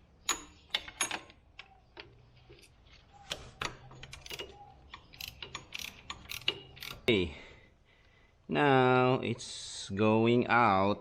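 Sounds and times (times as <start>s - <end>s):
ratchet wrench clicking: 4.1s - 7.1s.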